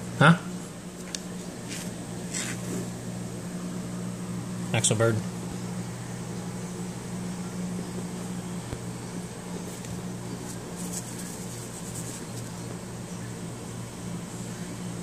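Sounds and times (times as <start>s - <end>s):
low machine hum: 0.0s - 15.0s
faint soft scratches: 9.7s - 12.6s.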